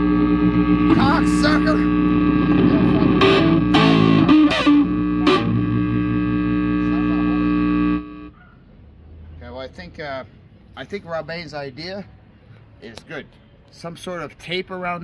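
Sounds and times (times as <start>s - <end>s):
distorted electric guitar chords: 0.0s - 8.3s.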